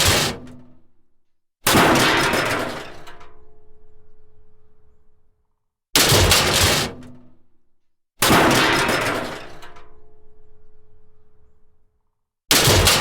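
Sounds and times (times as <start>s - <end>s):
metal crash: 12.5s - 13.0s.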